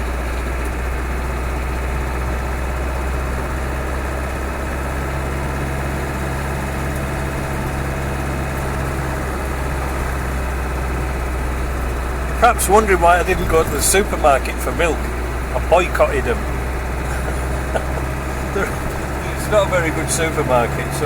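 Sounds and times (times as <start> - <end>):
engine drone inside cab: 0.0 - 21.0
steady hum: 12.3 - 21.0.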